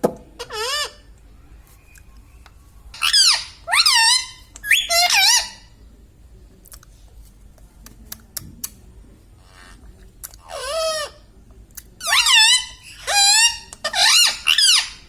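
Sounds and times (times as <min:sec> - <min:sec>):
parrot calls: 0:03.0 - 0:05.7, 0:12.0 - 0:15.0.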